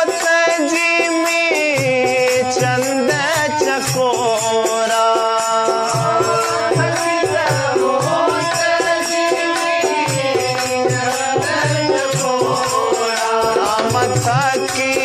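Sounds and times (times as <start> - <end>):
rattling percussion: 0.0 - 15.0.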